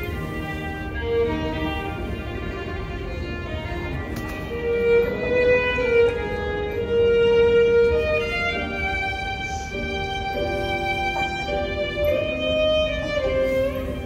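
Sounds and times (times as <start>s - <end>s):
instrumental background music: 0.0s - 14.0s.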